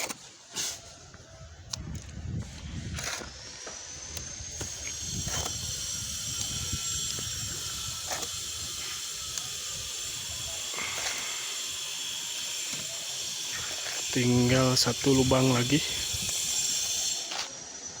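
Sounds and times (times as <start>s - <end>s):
high-pitched whine: 0.9s - 18.0s
wind buffeting microphone: 1.4s - 3.4s, 4.0s - 10.7s, 13.5s - 17.0s.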